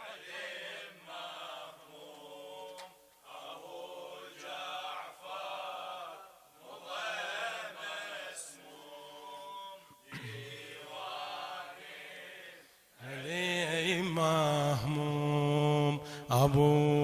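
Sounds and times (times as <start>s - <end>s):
man chanting a lament: 13.0s - 17.0s.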